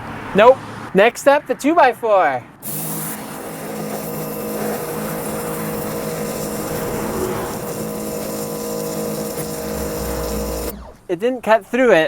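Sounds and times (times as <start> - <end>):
water jet hissing on wood: 2.6 - 11.1
pressure washer motor humming: 2.6 - 11.5.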